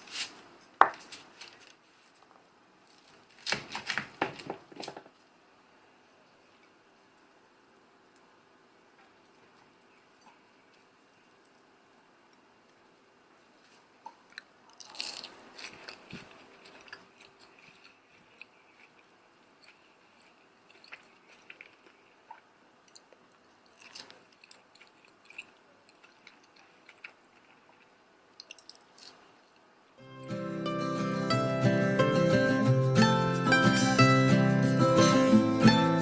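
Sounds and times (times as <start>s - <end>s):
chewing crispy food: 9.0s - 12.8s, 14.1s - 29.7s.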